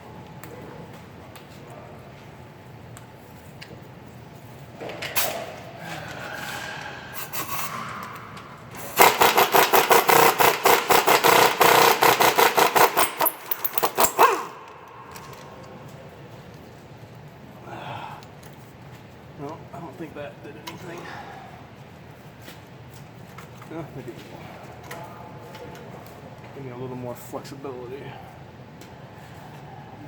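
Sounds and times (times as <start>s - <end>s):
ratchet wrench clicking: 8.8s - 14.5s.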